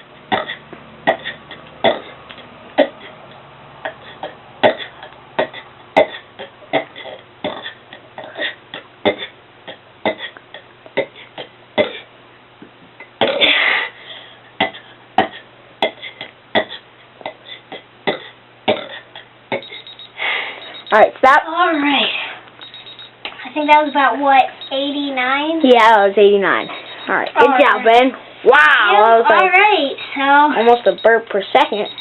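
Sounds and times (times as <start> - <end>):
person burping: 0.3 - 2.2, 2.8 - 3.1, 3.8 - 12.1, 14.6 - 19.8.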